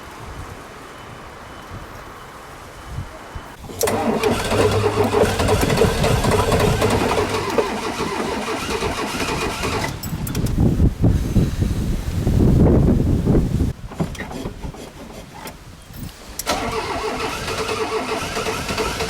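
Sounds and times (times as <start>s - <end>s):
car starter cranking engine: 3.5s - 10.6s, 16.2s - 19.0s
engine sputtering: 3.6s - 10.7s, 16.4s - 19.0s.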